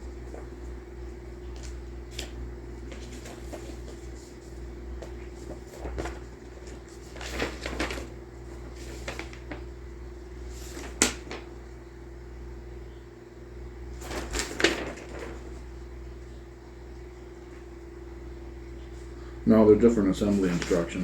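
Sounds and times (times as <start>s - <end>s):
paper rustling: 0.0s - 0.8s, 1.4s - 9.8s, 10.4s - 11.5s, 13.9s - 16.4s, 19.9s - 21.0s.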